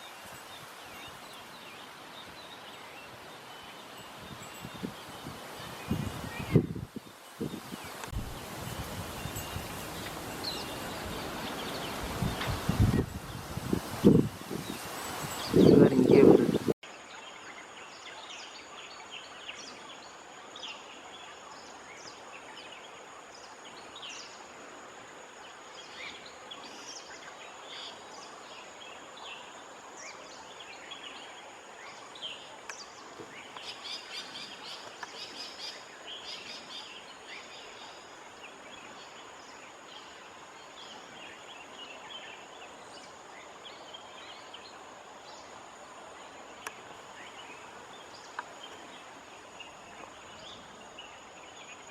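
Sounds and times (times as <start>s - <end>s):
birds chirping: 0.0s - 16.7s, 46.2s - 51.9s
low hiss: 0.0s - 51.9s.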